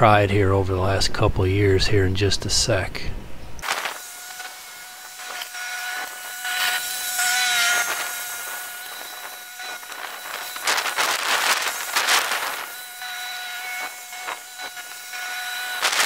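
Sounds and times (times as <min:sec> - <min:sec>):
hissing rush: 0:03.6 - 0:16.0
small motor whining: 0:03.6 - 0:16.0.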